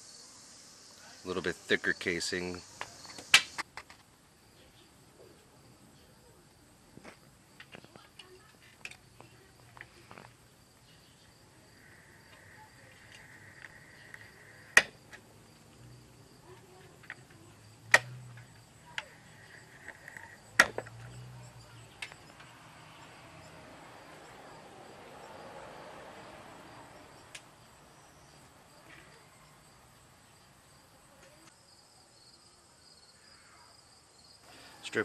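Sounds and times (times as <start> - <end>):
faint scraping hiss: 7.0 - 23.6.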